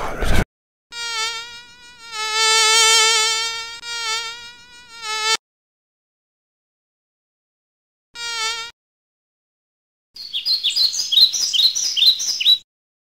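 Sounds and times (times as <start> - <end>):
insect buzzing whine: 0.9 - 5.4, 8.2 - 8.8.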